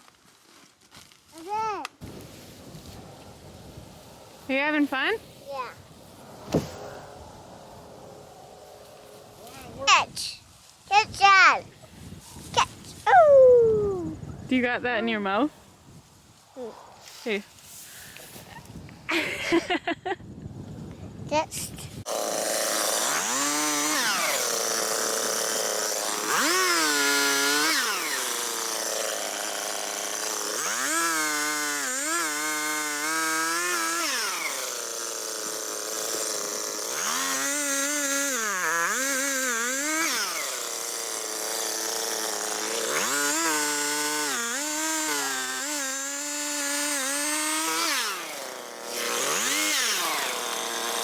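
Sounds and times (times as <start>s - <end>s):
chainsaw revving and idling: 22.1s - 51.0s.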